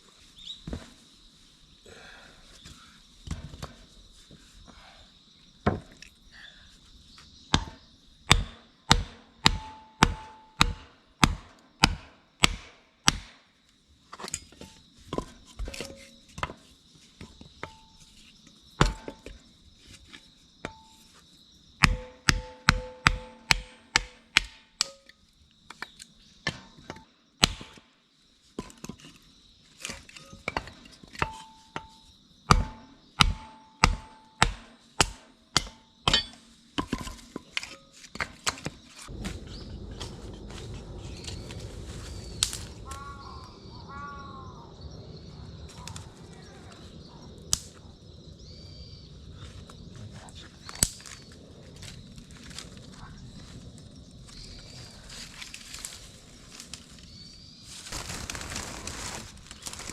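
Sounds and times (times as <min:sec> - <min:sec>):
sharp chopping strikes: 0:07.6 - 0:13.4, 0:21.8 - 0:25.0, 0:32.5 - 0:36.4.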